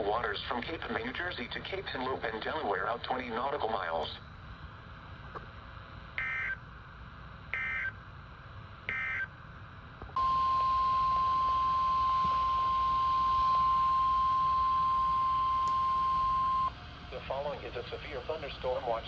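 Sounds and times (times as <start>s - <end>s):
steady single-pitch alarm tone: 6.2s - 6.6s, 8.9s - 9.3s, 10.2s - 16.8s.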